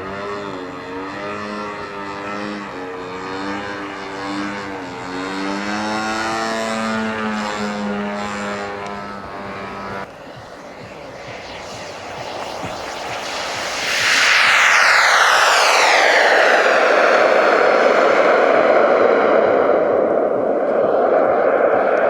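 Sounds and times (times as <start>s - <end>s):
model airplane engine: 0.0s - 20.6s
rushing noise: 9.4s - 22.0s.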